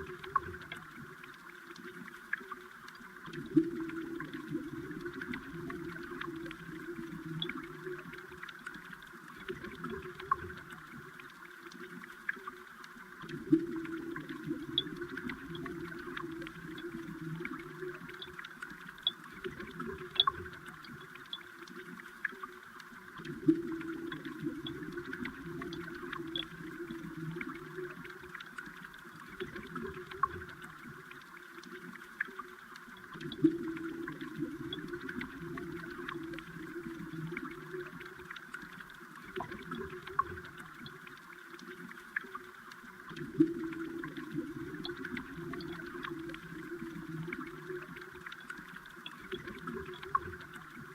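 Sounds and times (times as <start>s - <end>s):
sharp ticks and clicks: 0.0s - 50.9s
underwater stream rushing: 0.0s - 50.9s.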